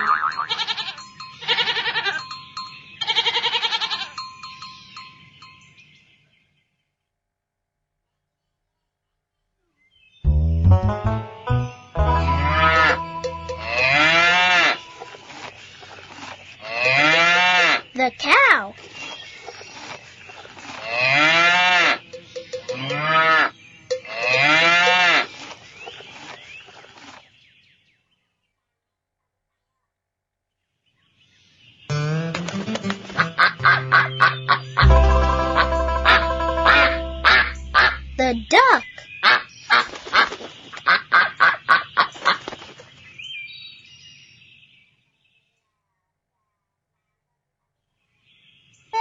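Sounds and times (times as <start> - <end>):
duck quacking: 12.2 - 14.8, 31.9 - 38.2
cow mooing: 12.4 - 15.0, 22.7 - 25.2.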